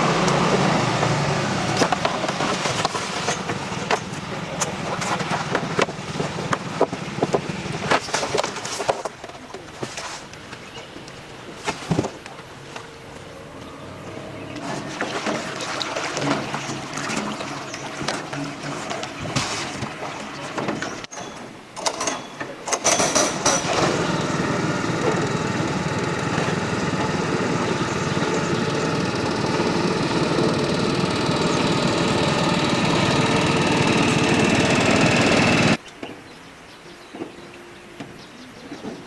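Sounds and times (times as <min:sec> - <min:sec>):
small engine running: 0:00.0 - 0:08.4, 0:12.5 - 0:21.0, 0:22.8 - 0:35.8.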